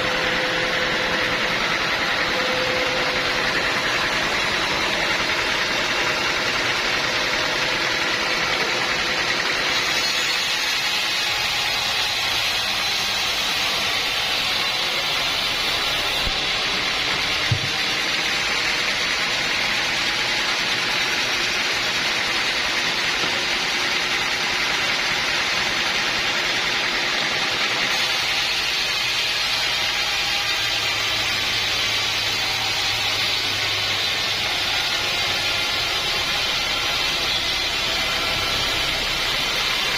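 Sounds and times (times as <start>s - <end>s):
sawmill droning: 0.0s - 39.9s
short knock: 17.5s - 17.8s.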